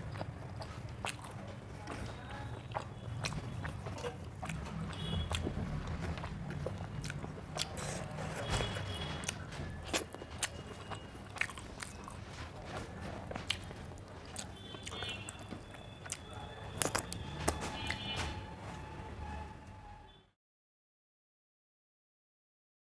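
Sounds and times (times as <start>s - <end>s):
person chewing food: 0.0s - 18.4s
mouth clicks and smacks: 2.6s - 12.2s.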